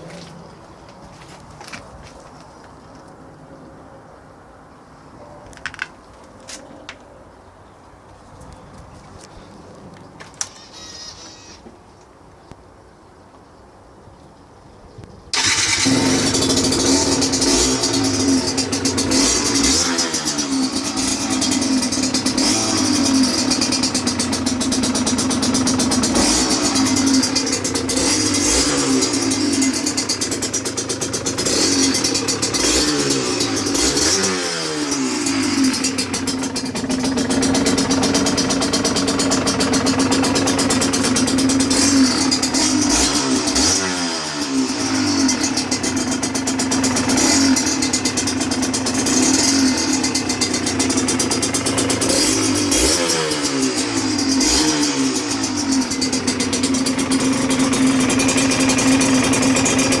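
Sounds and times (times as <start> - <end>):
two-stroke motorcycle engine revving: 15.4 - 60.0.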